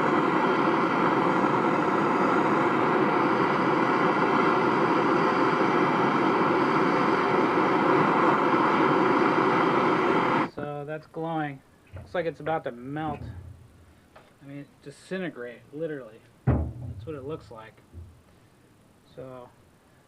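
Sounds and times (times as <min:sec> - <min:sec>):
gas torch hissing: 0:00.0 - 0:10.5.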